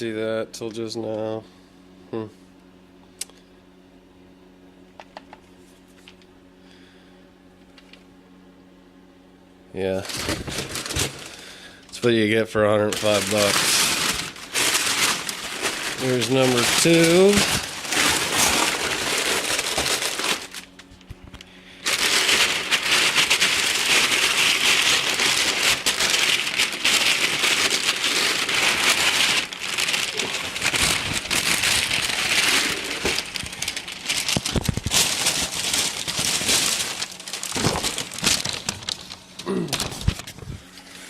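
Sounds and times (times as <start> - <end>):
packing material crinkling: 9.8 - 40.6.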